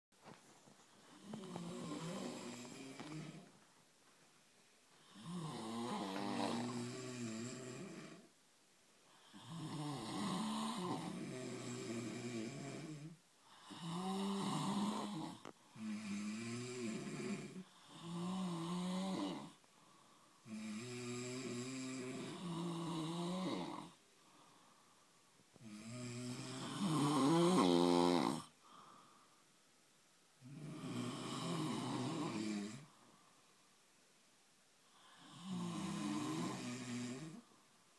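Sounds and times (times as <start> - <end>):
men snoring: 1.2 - 3.5, 5.0 - 8.3, 9.2 - 19.6, 20.4 - 24.0, 25.6 - 28.6, 30.4 - 32.9, 35.0 - 37.4.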